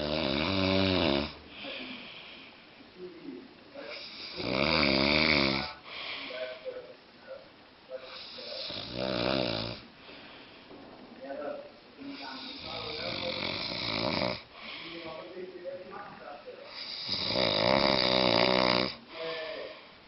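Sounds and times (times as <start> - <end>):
man snoring: 0.0 - 1.4, 3.9 - 5.8, 8.1 - 9.8, 12.1 - 14.8, 16.7 - 19.2
quiet breathing: 1.2 - 4.6, 5.4 - 17.5, 18.8 - 20.0.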